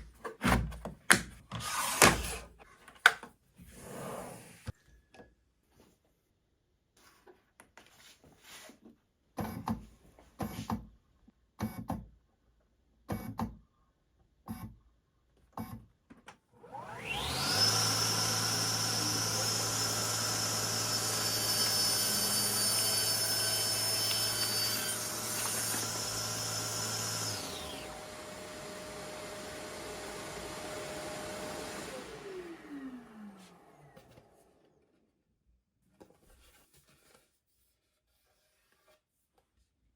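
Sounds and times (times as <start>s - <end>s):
table saw running with whine: 16.7s - 33.9s.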